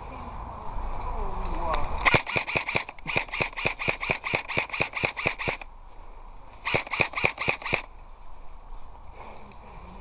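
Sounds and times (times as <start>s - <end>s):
airsoft rifle rapid shots: 2.0s - 5.7s, 6.6s - 7.9s.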